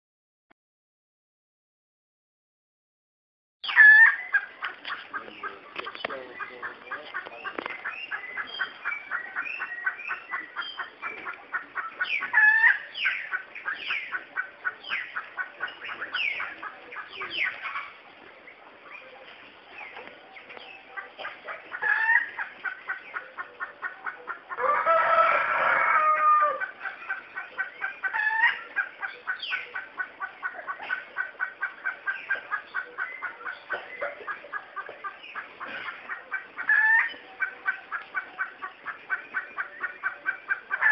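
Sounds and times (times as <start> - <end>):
birds chirping: 3.6 - 40.9
rooster crowing: 24.6 - 26.6.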